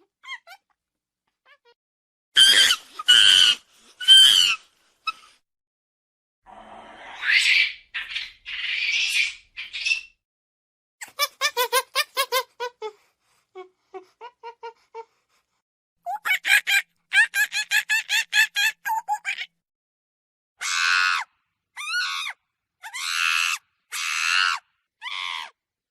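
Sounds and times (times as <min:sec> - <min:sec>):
monkey screeching and chattering: 0:02.4 - 0:04.6, 0:07.2 - 0:10.2.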